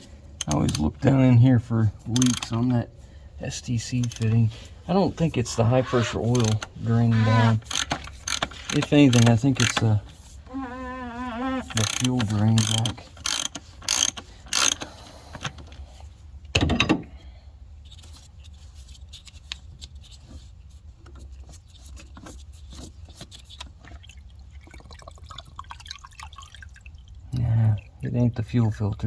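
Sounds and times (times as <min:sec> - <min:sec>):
sharp tool clicks: 0:00.4 - 0:00.8, 0:02.2 - 0:02.6, 0:11.8 - 0:14.9
faint dripping: 0:23.9 - 0:29.0.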